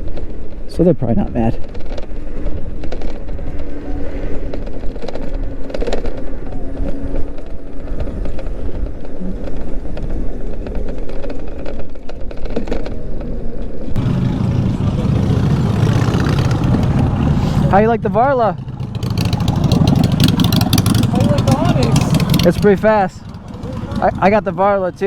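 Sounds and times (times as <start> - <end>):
city traffic: 0.0 - 9.2, 13.8 - 25.0
wind rushing over microphone: 0.0 - 25.0
throbbing low rumble: 14.0 - 25.0.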